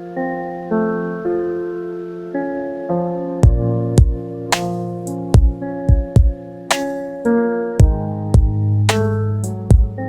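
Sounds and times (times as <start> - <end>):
kick drum thumps: 3.4 - 4.2, 5.4 - 6.4, 7.8 - 8.6, 9.7 - 10.0
sharp snare hit: 4.5 - 4.8, 6.7 - 7.1.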